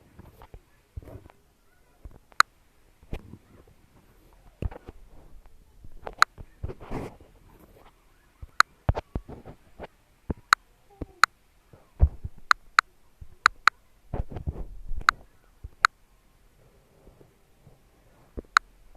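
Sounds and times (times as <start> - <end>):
phone touch-feedback clicks: 6.0 - 6.8, 15.0 - 16.0.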